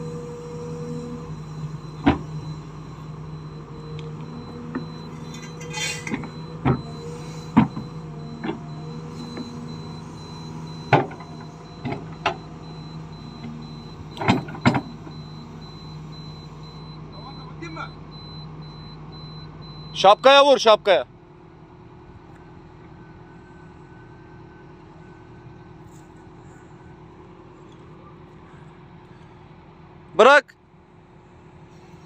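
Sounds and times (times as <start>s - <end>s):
excavator engine and hydraulics humming: 0.0s - 32.0s
sharp metal clanks: 5.3s - 6.3s.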